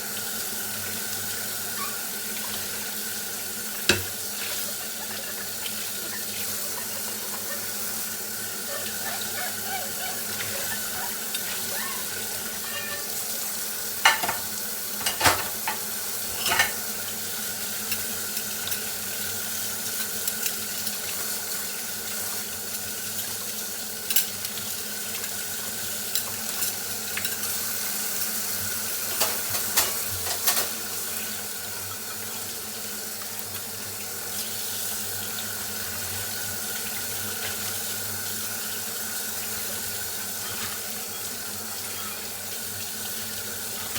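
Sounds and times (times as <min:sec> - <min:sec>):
tap water running: 0:00.0 - 0:43.9
dishes clinking: 0:14.0 - 0:16.9.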